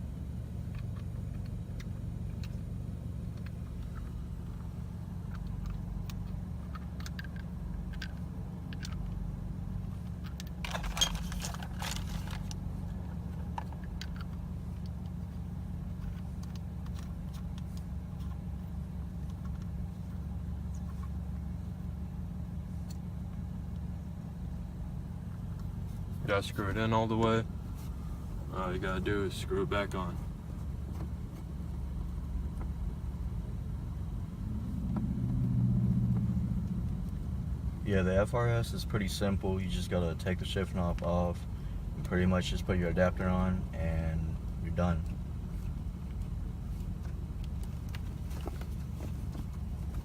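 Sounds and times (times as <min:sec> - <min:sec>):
steady low hum: 0:00.0 - 0:50.0
metal rattle: 0:10.2 - 0:12.6.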